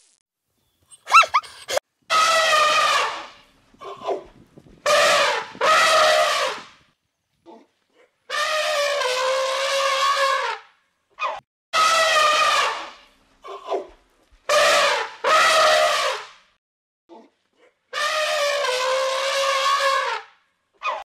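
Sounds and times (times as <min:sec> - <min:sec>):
animal drawn-out calls: 0:01.0 - 0:04.2.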